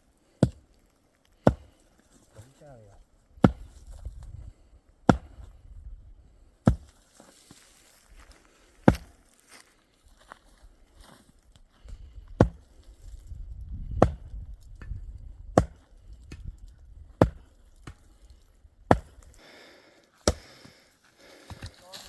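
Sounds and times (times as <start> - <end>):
wood being chopped: 0.4 - 0.8, 1.4 - 2.5, 3.4 - 4.4, 5.0 - 5.5, 6.6 - 7.0, 8.8 - 9.2, 11.9 - 12.8, 13.8 - 19.4, 20.2 - 22.0.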